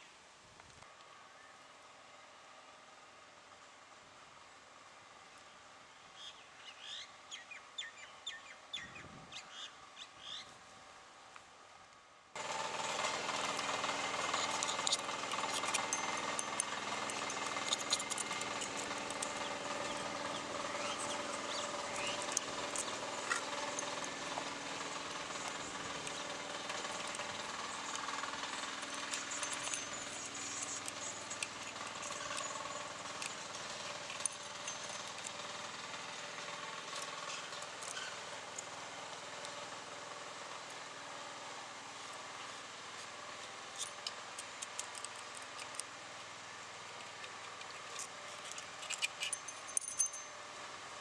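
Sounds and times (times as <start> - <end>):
sharp clicks and scrapes: 12.4 - 38.8, 42.0 - 46.0, 46.8 - 50.2
small engine running: 12.4 - 51.0.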